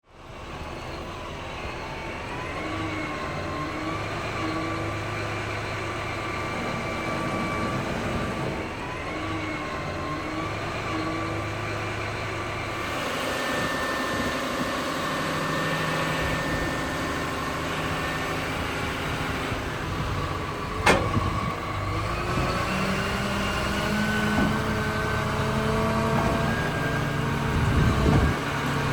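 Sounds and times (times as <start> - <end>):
diesel engine running: 0.1 - 28.9
engine whine: 0.1 - 28.9.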